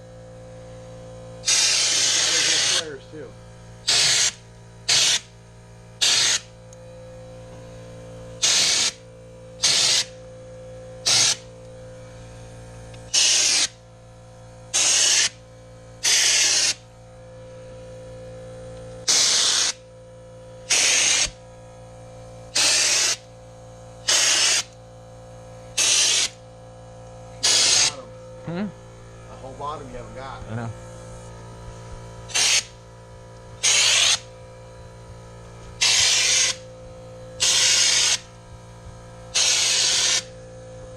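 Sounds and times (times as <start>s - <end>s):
spray gun hissing: 1.4s - 2.9s, 3.9s - 5.3s, 6.0s - 6.5s, 8.4s - 9.0s, 9.6s - 10.1s, 11.0s - 11.4s, 13.1s - 13.7s, 14.8s - 15.4s, 16.0s - 16.8s, 19.1s - 19.8s, 20.7s - 21.3s, 22.6s - 23.2s, 24.1s - 24.7s, 25.8s - 26.4s, 27.4s - 28.0s, 32.3s - 32.8s, 33.6s - 34.3s, 35.8s - 36.6s, 37.4s - 38.2s, 39.4s - 40.3s.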